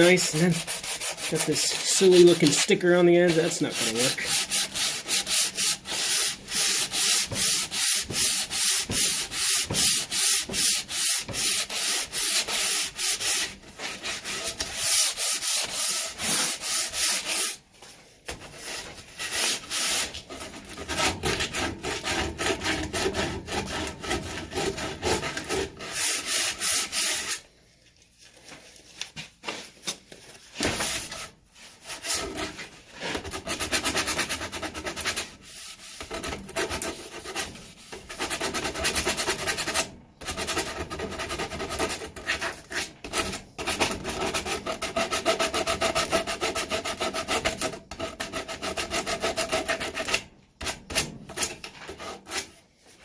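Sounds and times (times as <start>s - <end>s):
sandpaper scratching on wood: 0.0s - 17.6s, 18.6s - 27.4s.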